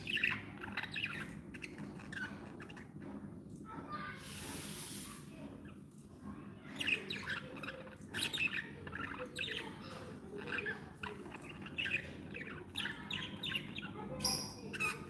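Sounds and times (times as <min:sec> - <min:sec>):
budgerigars chirping: 0:00.0 - 0:02.3, 0:06.8 - 0:15.0
low background hum: 0:00.0 - 0:15.0.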